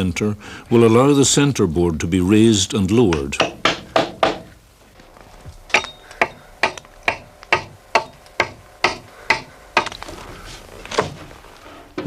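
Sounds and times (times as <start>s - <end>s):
hammer striking nails into wood: 3.1s - 4.5s, 5.7s - 10.0s.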